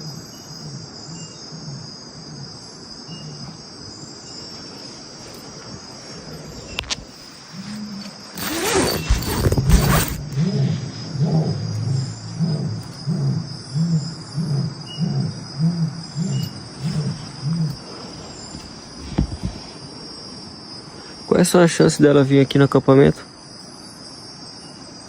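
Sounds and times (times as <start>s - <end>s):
crickets chirring: 0.0s - 25.0s
jaguar deep hoarse grunts: 8.9s - 18.2s.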